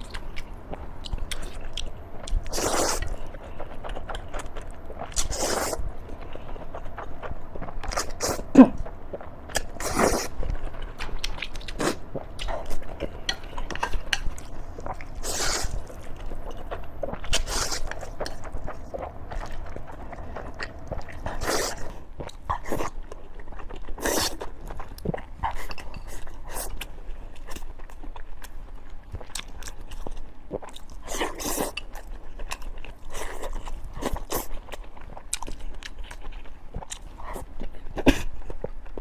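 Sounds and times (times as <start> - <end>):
person chewing: 0.0 - 39.0.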